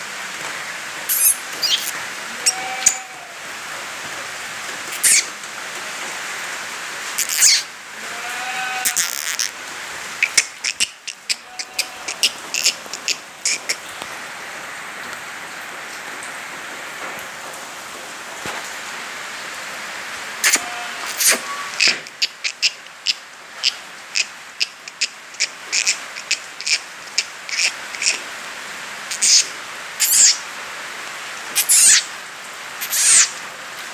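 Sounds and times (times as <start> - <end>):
steady hiss: 0.0 - 33.9
goats bleating: 2.3 - 3.4, 8.0 - 9.4, 11.3 - 12.4, 20.4 - 21.4.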